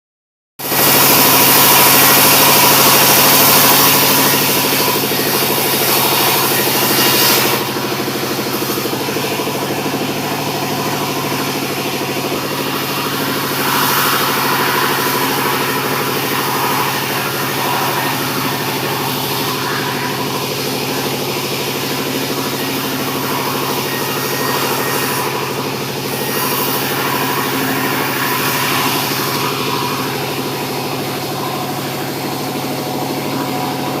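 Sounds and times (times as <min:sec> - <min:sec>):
sawmill saw cutting timber: 0:00.6 - 0:34.0.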